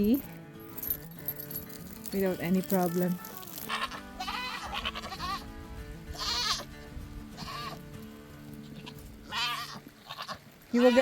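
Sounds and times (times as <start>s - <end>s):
background music with held notes: 0.0s - 11.0s
goats bleating: 3.6s - 5.5s, 6.1s - 6.7s, 7.4s - 7.9s, 8.5s - 11.0s.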